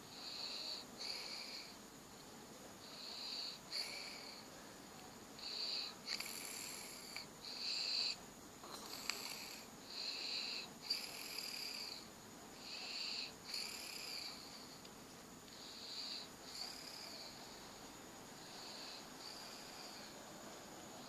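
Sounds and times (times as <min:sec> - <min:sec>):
whistling snore: 0:00.2 - 0:01.8, 0:05.4 - 0:08.2, 0:08.9 - 0:14.6, 0:15.6 - 0:17.4.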